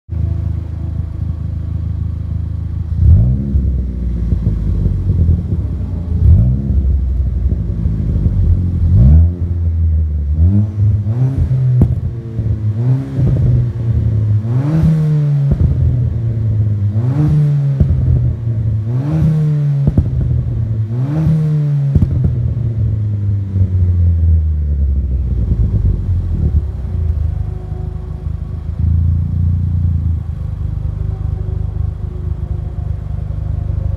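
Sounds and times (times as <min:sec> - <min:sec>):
car engine revving: 0:00.1 - 0:33.9
exhaust pops and crackles: 0:11.1 - 0:13.8, 0:14.7 - 0:16.2, 0:17.2 - 0:23.0.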